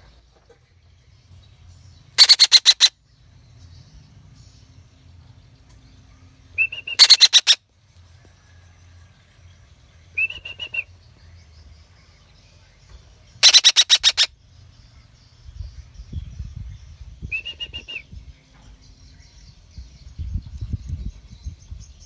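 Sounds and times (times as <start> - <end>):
parakeet calling: 2.2 - 2.9, 6.7 - 7.6, 13.4 - 14.4.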